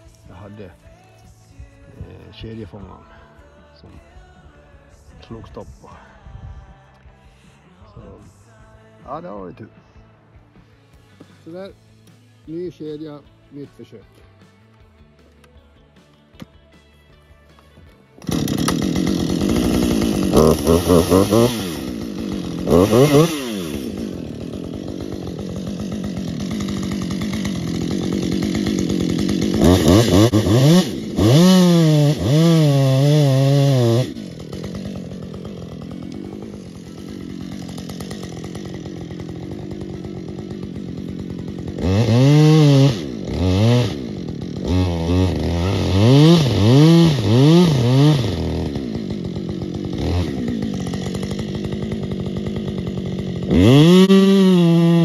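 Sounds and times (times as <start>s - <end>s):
chainsaw revving and cutting wood: 0.0s - 4.2s, 10.9s - 16.9s, 17.5s - 55.0s.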